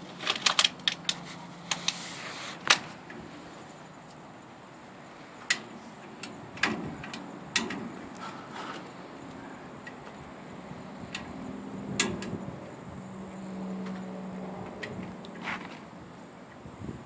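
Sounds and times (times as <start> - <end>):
sharp clicks and knocks: 5.4 - 8.9, 11.1 - 11.4, 12.0 - 12.4.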